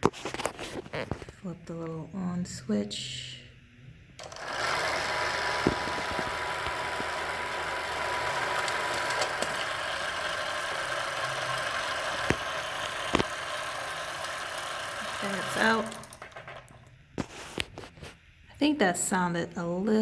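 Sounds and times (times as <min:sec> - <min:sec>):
thin steady whine: 0:00.0 - 0:20.0
film camera motor whirring: 0:04.2 - 0:16.8.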